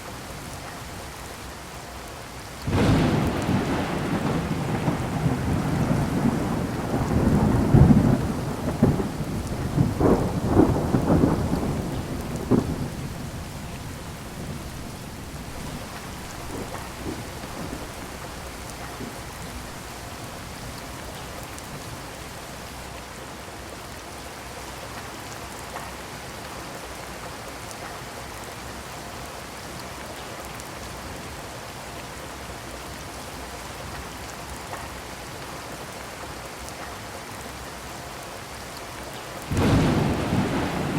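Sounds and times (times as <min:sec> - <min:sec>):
rain hissing: 0:00.1 - 0:23.0, 0:39.0 - 0:40.9
thunder rumbling: 0:02.7 - 0:22.8, 0:39.5 - 0:40.9.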